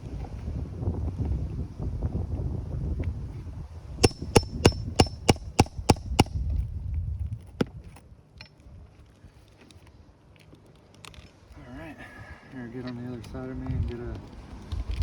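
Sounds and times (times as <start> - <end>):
wind rumble on microphone: 0.0 - 9.4, 13.2 - 15.0
hammer striking metal: 4.0 - 6.4.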